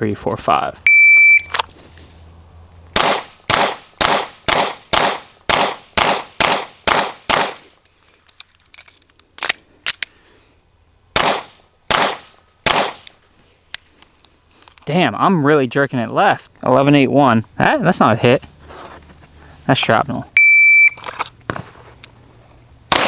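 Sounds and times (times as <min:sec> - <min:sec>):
pistol shots: 0:03.0 - 0:07.7, 0:11.2 - 0:13.1.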